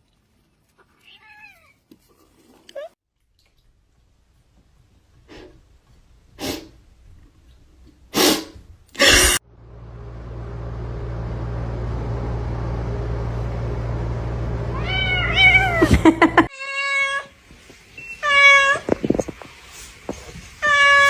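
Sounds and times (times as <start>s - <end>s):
cat meowing: 0.8s - 1.8s, 14.7s - 15.9s
steady low hum: 9.1s - 16.5s.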